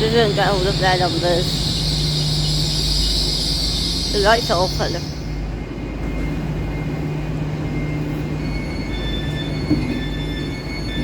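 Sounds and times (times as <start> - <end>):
thin high whines: 0.0 - 5.7
train running with low hum: 0.0 - 11.0.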